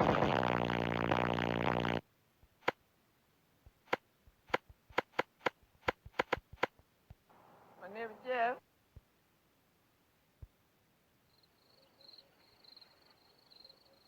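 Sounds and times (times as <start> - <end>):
loud buzzy low drone: 0.0 - 2.0
sharp short clicks: 3.8 - 6.8.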